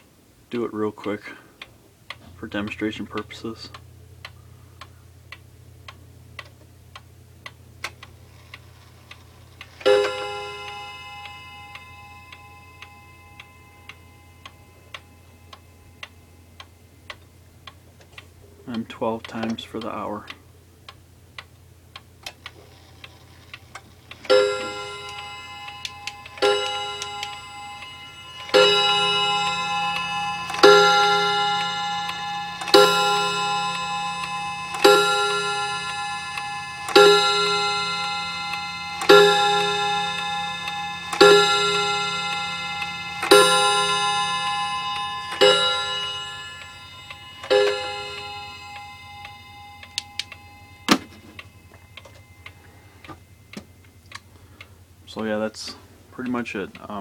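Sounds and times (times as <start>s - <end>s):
clock ticking: 0.0s - 57.0s
clock chime strikes: 9.6s - 17.4s, 24.0s - 55.3s.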